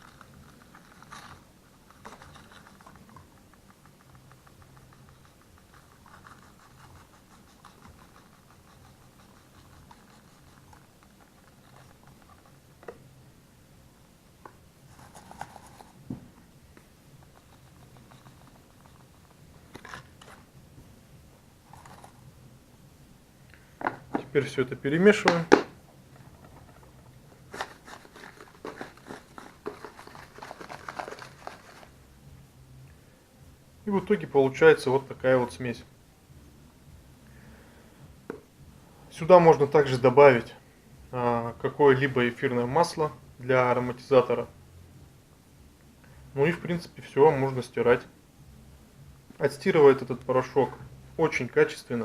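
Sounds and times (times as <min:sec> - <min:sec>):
scraping and clicking strokes: 0:00.0 - 0:13.0, 0:14.9 - 0:20.5, 0:26.2 - 0:31.9.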